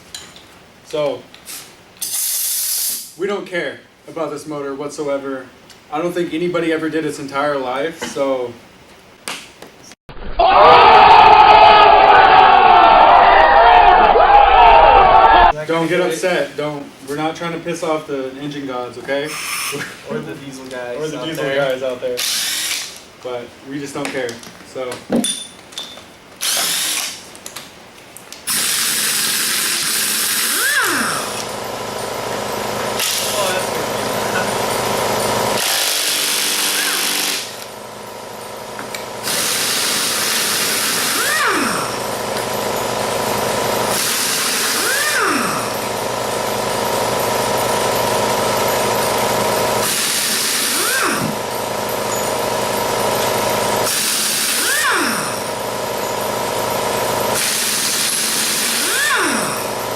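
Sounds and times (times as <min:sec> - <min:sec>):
pneumatic air tool whining: 0:01.5 - 0:03.2, 0:19.3 - 0:20.0, 0:22.2 - 0:23.0, 0:26.4 - 0:27.2, 0:28.4 - 0:32.0, 0:32.8 - 0:37.7, 0:38.8 - 0:59.9
steady mechanical hum: 0:11.0 - 0:59.9
impact wrench running: 0:19.3 - 0:19.9, 0:22.2 - 0:23.0, 0:26.4 - 0:27.2, 0:28.5 - 0:59.9.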